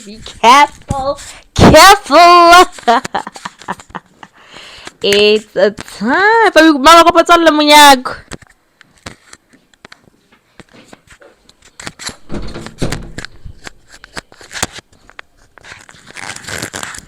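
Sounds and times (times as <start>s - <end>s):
packaging rustling: 11.7s - 17.0s.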